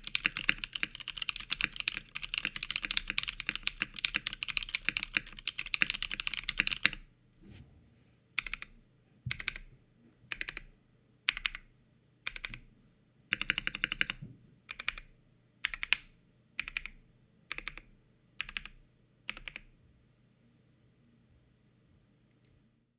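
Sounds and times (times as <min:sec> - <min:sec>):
mechanical keyboard typing: 0:00.0 - 0:07.0, 0:08.4 - 0:08.7, 0:09.3 - 0:09.7, 0:10.3 - 0:10.7, 0:11.3 - 0:11.7, 0:12.3 - 0:12.6, 0:13.3 - 0:19.7.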